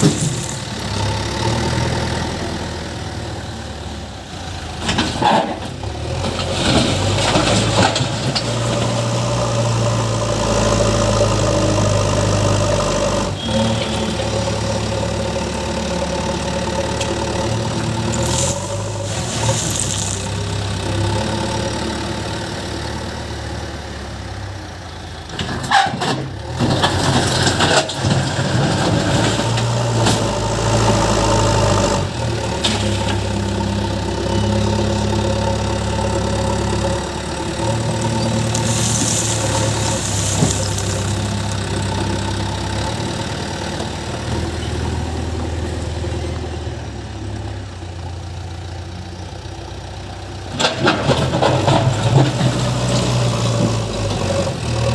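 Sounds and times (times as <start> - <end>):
diesel engine running: 0.0 - 25.7, 26.3 - 54.9.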